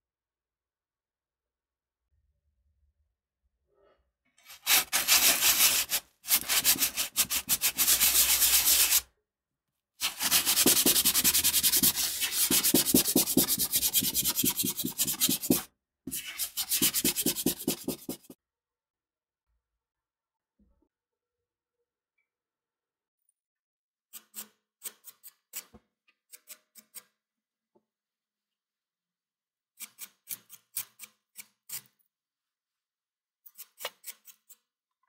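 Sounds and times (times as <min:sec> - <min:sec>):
rapid rubbing strokes on surface: 0:04.5 - 0:09.0, 0:10.0 - 0:18.4.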